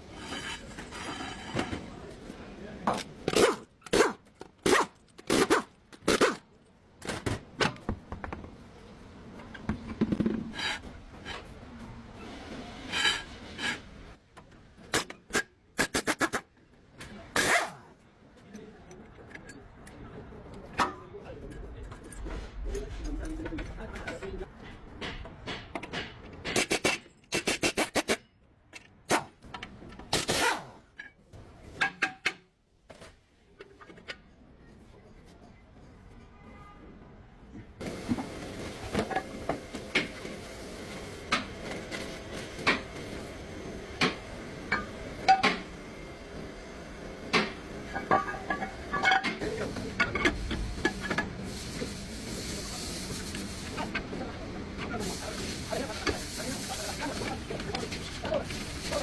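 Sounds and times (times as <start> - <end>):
hand tools clicking and scraping: 0.0 - 2.0, 3.0 - 6.5, 12.9 - 14.0, 14.8 - 20.0, 21.8 - 29.4, 47.1 - 54.2, 54.8 - 59.0.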